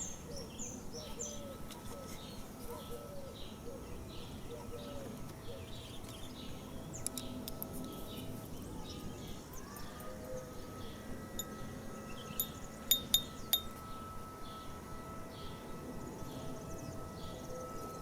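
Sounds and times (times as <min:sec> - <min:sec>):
metal chimes ringing: 0:11.2 - 0:14.0
bright metallic strikes: 0:12.4 - 0:13.8.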